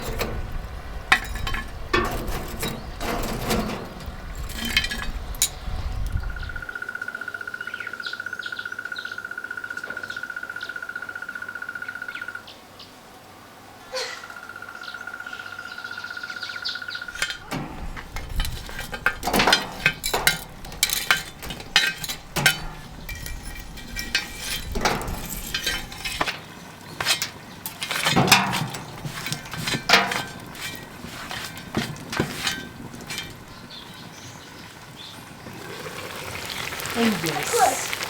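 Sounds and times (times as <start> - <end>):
metal utensils clinking on cookware: 0.0 - 6.2, 17.1 - 33.8.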